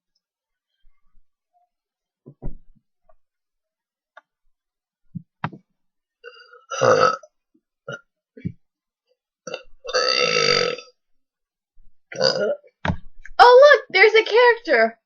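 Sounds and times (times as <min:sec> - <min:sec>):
people burping: 0:06.2 - 0:07.3, 0:09.5 - 0:10.9, 0:12.1 - 0:12.7.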